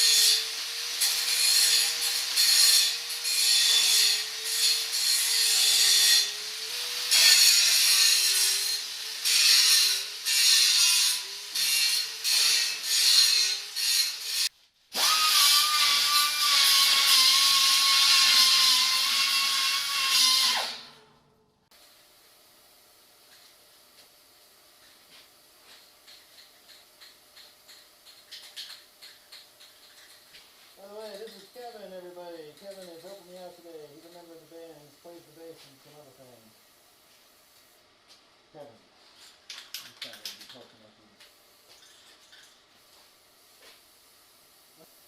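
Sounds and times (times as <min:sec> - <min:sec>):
angle grinder grinding steel: 0:00.0 - 0:21.0.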